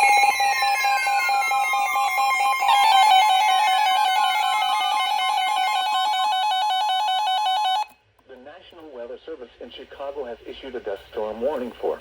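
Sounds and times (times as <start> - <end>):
two-tone alarm: 0.0 - 8.0.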